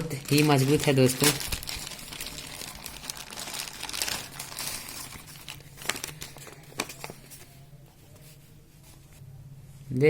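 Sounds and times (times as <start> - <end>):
packaging crinkling and tearing: 0.0 - 7.4.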